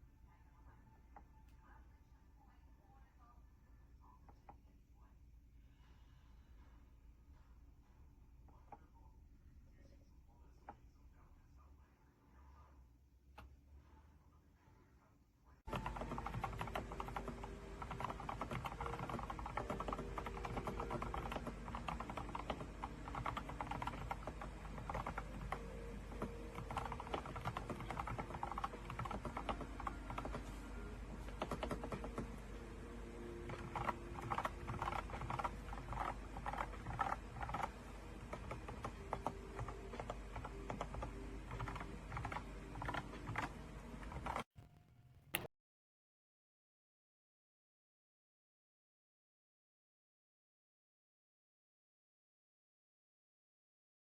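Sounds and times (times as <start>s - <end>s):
mechanical keyboard typing: 15.7s - 32.5s, 33.3s - 45.5s.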